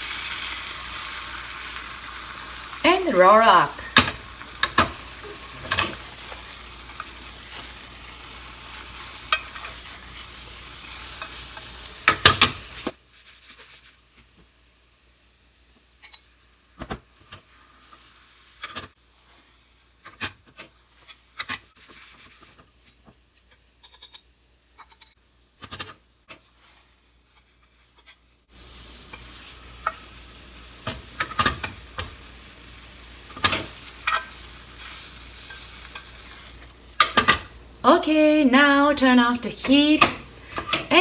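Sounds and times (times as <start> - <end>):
egg sizzling in a frying pan: 0.0 - 37.9
utensil scraping and tapping pan: 33.3 - 37.5.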